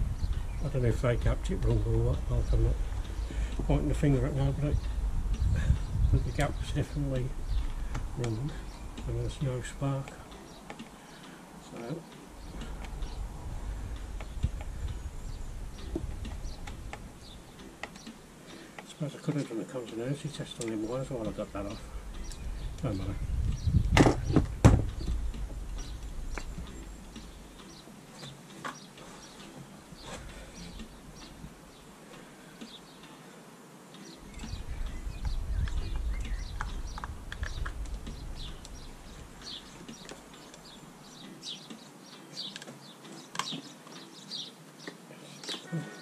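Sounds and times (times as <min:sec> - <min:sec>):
low rumble: 0:00.0 - 0:09.3
small birds chirping: 0:00.0 - 0:46.0.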